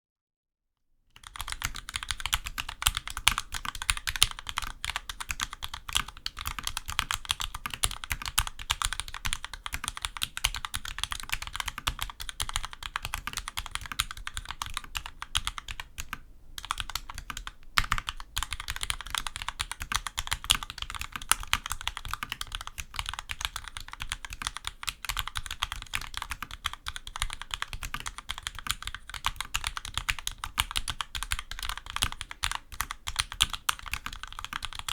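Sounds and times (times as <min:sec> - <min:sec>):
mechanical keyboard typing: 0:01.2 - 0:34.9.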